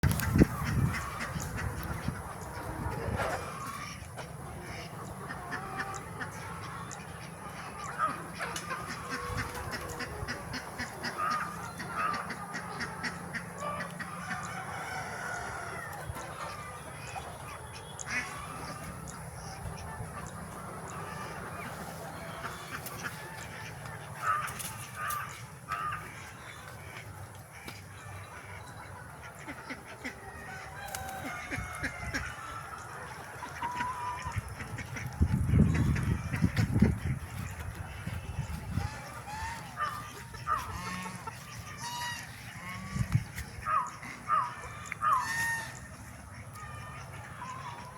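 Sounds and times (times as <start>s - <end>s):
chickens clucking and calling: 0.0s - 47.9s.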